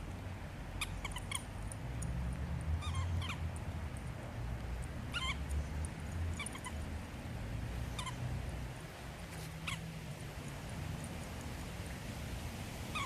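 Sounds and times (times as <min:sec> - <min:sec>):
squeaky dog toy squeaking: 0:00.8 - 0:01.6, 0:02.8 - 0:03.5, 0:05.1 - 0:05.5, 0:06.3 - 0:06.8, 0:07.9 - 0:08.3.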